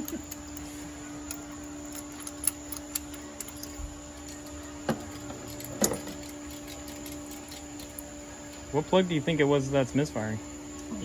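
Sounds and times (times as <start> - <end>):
hand tools clicking and clinking: 0.0 - 8.7
steady hum: 0.0 - 11.0.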